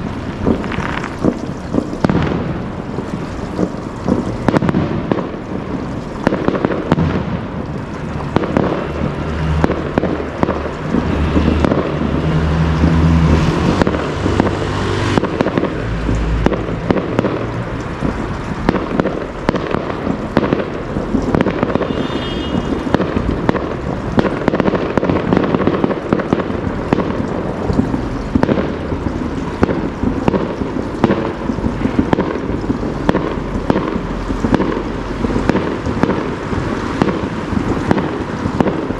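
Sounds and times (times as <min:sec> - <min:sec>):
deep firework booms: 0:00.0 - 0:12.4, 0:13.2 - 0:38.9
fireworks bangs and crackles: 0:00.0 - 0:38.9.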